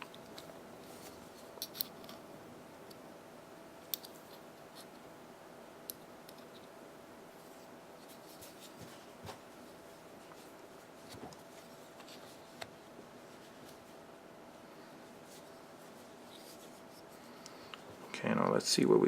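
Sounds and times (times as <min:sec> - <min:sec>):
knife parts rubbing and clicking: 0:01.5 - 0:02.2.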